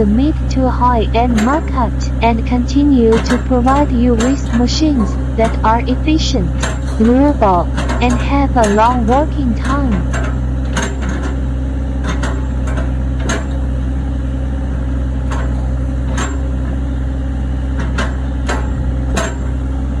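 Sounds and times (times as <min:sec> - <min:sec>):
diesel engine running: 0:00.0 - 0:20.0
sharp knocks: 0:01.2 - 0:13.7.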